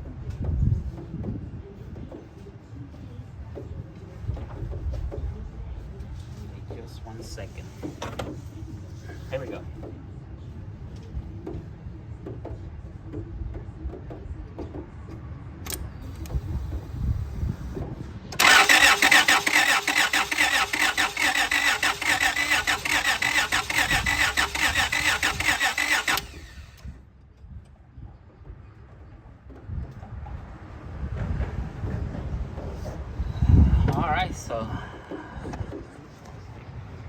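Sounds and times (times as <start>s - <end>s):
click: 15.6s - 16.4s
starter motor cranking engine: 18.4s - 26.9s.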